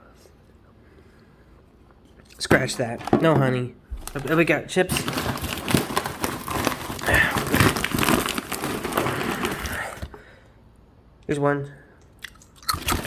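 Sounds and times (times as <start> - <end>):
chip bag crinkling: 3.0 - 10.2, 12.6 - 13.0.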